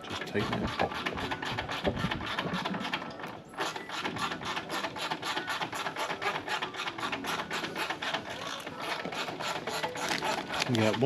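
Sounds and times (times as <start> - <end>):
hand ratchet clicking: 0.0 - 11.0
tools and metal parts handled: 4.0 - 11.0.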